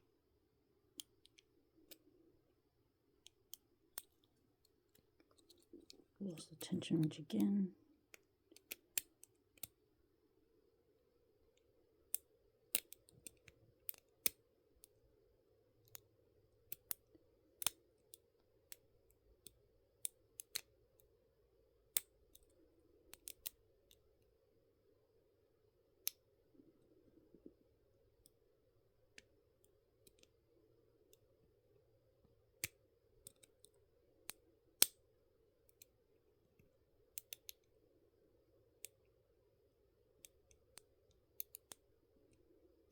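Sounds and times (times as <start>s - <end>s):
faint steady hum: 0.0s - 42.9s
metallic clicks of lock picking: 3.2s - 6.0s, 8.1s - 9.8s, 12.1s - 15.0s, 15.8s - 21.1s, 23.1s - 24.0s, 30.0s - 30.4s, 32.6s - 35.0s, 37.1s - 37.7s, 40.2s - 41.8s.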